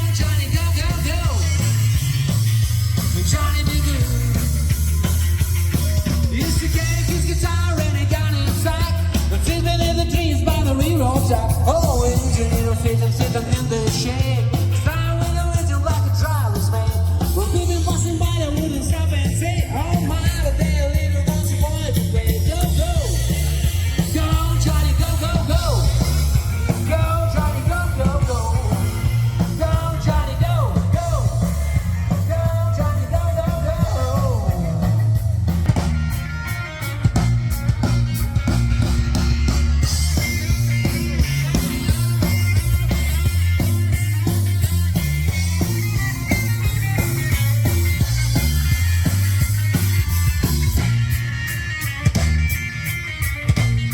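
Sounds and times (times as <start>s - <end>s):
person singing: 0.0s - 35.4s
heavy bass: 0.0s - 53.9s
rock music: 0.0s - 53.9s.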